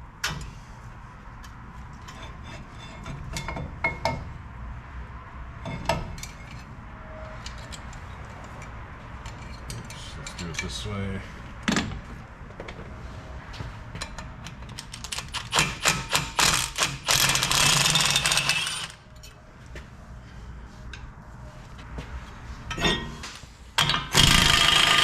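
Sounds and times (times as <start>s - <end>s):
loud buzzing bursts: 24.1s - 25.0s.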